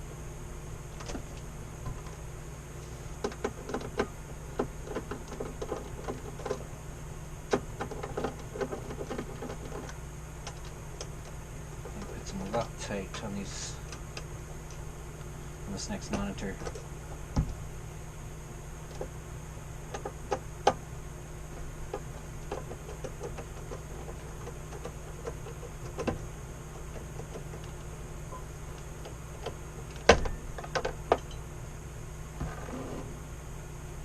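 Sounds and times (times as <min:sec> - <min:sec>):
steady low hum: 0:00.0 - 0:34.0
clicks and knocks of hands working: 0:07.5 - 0:12.7.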